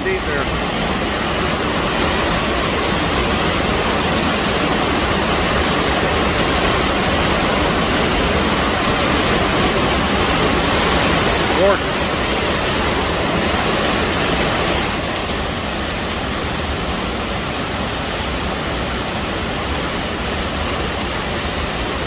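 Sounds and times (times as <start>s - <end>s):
waterfall pounding into pool: 0.0s - 22.0s.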